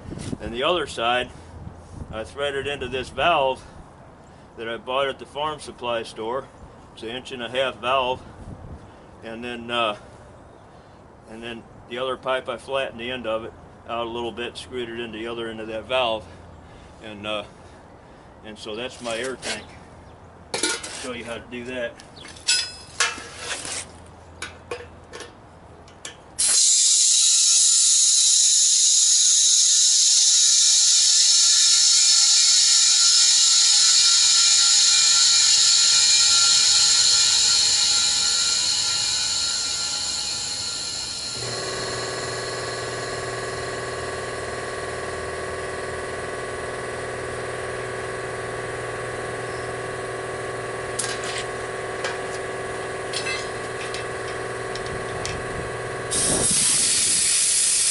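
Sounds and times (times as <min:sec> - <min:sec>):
clicks and clanks: 0:24.4 - 0:26.3, 0:53.1 - 0:55.4
compressed air hissing: 0:26.4 - 0:44.0, 0:56.1 - 0:57.9
hum with held tones: 0:26.4 - 0:57.9.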